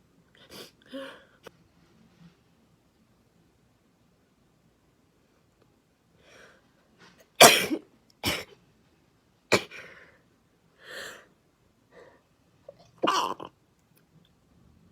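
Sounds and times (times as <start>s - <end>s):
soft breaths: 6.1s - 7.3s, 9.7s - 12.6s.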